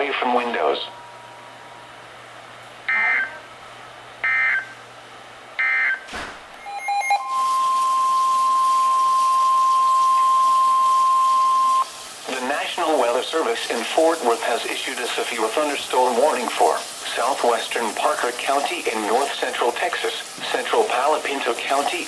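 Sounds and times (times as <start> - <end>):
steady warning alarm tone: 2.9 - 3.4, 4.2 - 4.8, 5.6 - 12.6
static hiss: 7.2 - 22.0.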